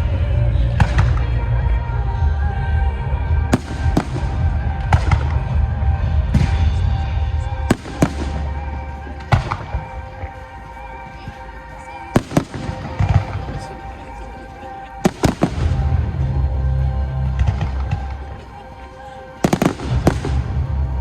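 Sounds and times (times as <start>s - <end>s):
deep rumble: 0.0s - 10.2s, 15.4s - 18.4s, 19.8s - 21.0s
music: 0.0s - 21.0s
fireworks bangs: 3.5s - 10.5s, 12.1s - 14.1s, 15.0s - 16.4s, 19.4s - 21.0s.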